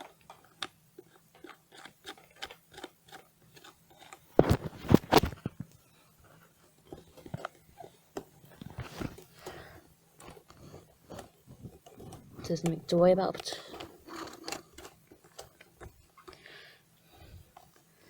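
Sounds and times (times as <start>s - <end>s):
plastic parts clicking: 0.0s - 5.8s, 6.8s - 16.5s
plastic parts clattering: 6.8s - 16.4s.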